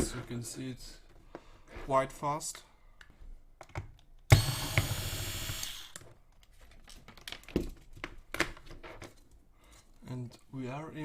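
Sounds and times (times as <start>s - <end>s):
electric screwdriver motor running: 4.3s - 6.0s.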